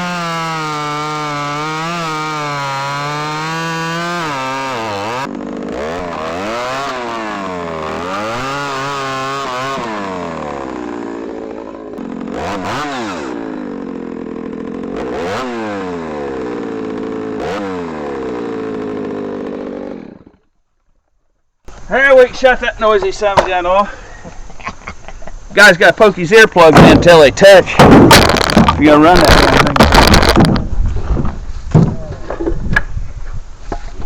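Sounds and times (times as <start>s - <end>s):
chainsaw cutting wood: 0.0s - 20.5s, 26.8s - 32.6s.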